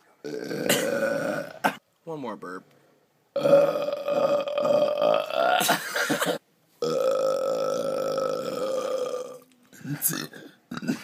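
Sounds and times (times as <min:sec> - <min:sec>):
man belching: 0:00.2 - 0:01.8, 0:03.3 - 0:09.4, 0:10.0 - 0:11.0.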